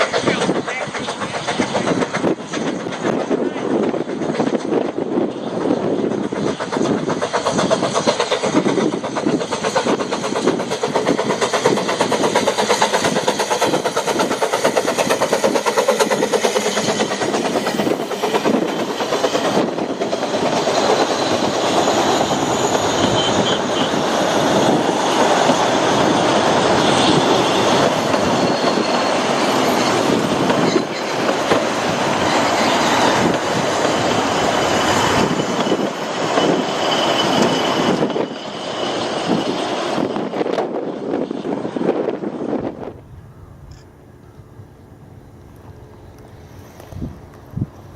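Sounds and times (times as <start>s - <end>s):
train wheels clattering over joints: 0.0s - 41.5s
train rolling rumble: 0.0s - 47.9s
high wheel squeal: 6.4s - 42.0s.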